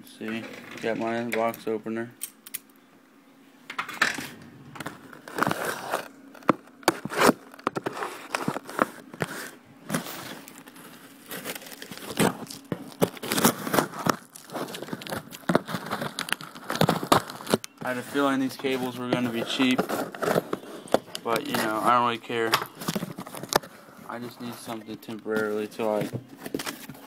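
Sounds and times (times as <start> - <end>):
cardboard tearing and crinkling: 4.8 - 27.0
box cutter slitting cardboard: 5.1 - 10.4, 11.3 - 17.6.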